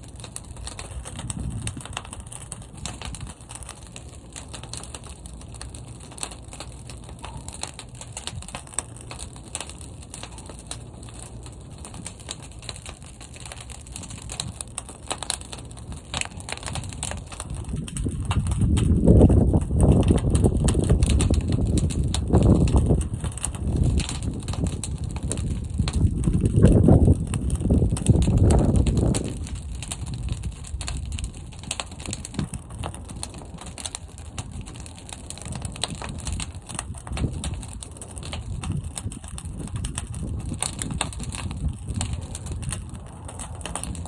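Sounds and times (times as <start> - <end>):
fire crackling in kiln: 0.0 - 44.0
low rumble of flames: 0.0 - 44.0.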